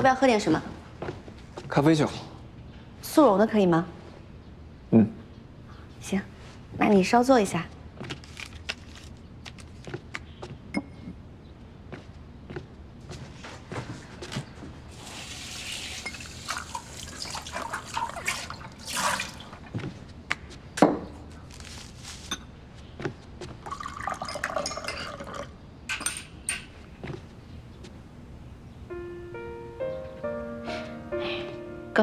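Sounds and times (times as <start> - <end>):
water pouring into cup: 14.9 - 19.8, 23.6 - 26.7
spoon and cup clinks: 23.7 - 26.8.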